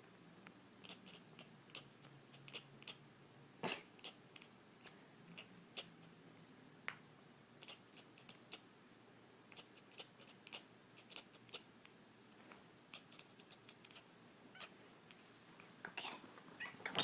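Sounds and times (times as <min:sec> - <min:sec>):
cat chattering: 0:00.8 - 0:03.0, 0:03.6 - 0:06.2, 0:07.6 - 0:08.7, 0:09.5 - 0:12.0, 0:12.9 - 0:14.8, 0:16.6 - 0:17.0.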